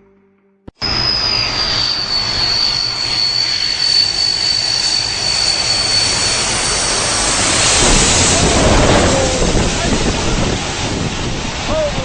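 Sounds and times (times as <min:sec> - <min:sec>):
jet engines running: 0:00.8 - 0:12.0.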